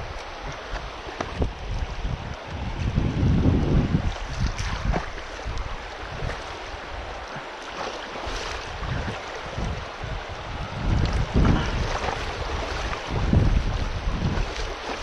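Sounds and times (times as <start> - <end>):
rushing water: 0.0 - 15.0
wind buffeting microphone: 0.0 - 15.0.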